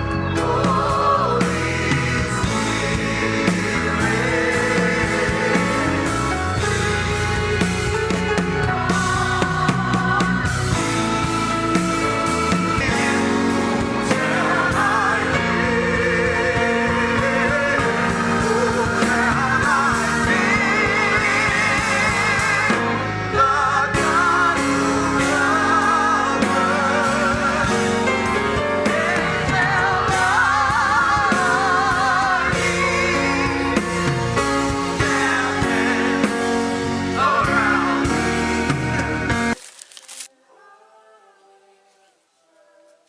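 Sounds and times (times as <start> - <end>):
gospel music with singing: 0.0 - 43.0.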